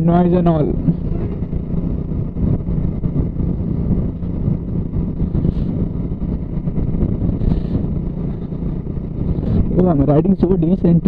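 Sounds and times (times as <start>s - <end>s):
motorcycle engine hum: 0.0s - 11.0s
wind buffeting microphone: 0.0s - 11.0s.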